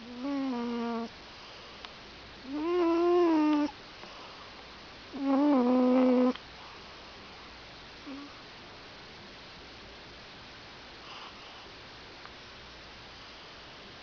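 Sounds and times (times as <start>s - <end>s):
cat snoring: 0.0s - 1.1s, 2.4s - 3.8s, 5.1s - 6.4s, 8.0s - 8.3s.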